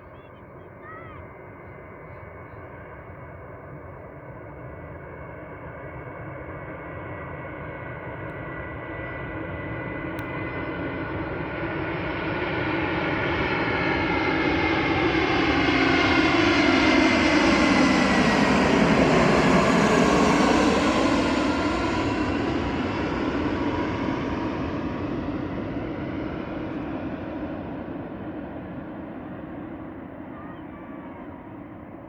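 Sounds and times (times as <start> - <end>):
jet airliner flying past: 0.0 - 32.0.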